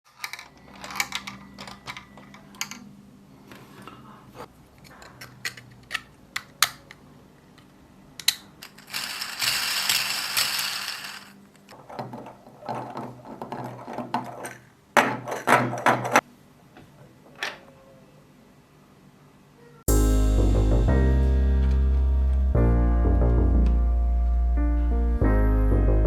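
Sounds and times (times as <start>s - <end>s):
plastic fidget toy clicking: 8.2s - 11.3s.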